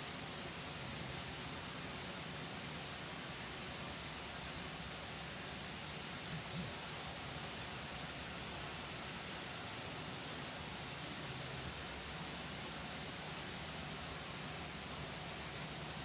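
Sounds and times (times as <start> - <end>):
faint low hum: 6.2 - 6.8
steady hiss: 6.2 - 6.9.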